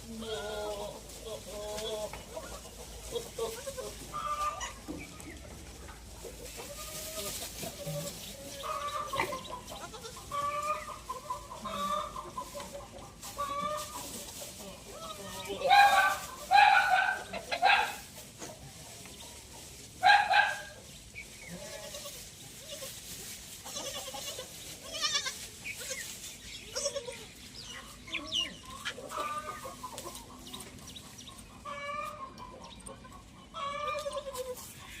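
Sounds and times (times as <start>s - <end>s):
chickens clucking: 0.0s - 35.0s
goats bleating: 0.1s - 2.1s, 6.6s - 10.9s, 21.5s - 22.9s, 23.6s - 27.3s.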